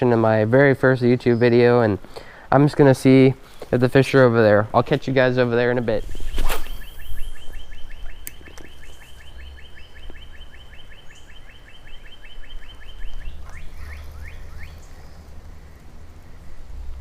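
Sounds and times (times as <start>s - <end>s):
bird singing fast trill: 5.2s - 16.7s.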